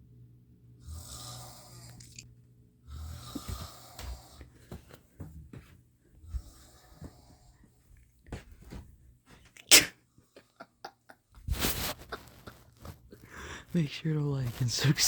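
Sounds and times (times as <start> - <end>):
person snoring: 0.8 - 2.2, 2.9 - 4.4.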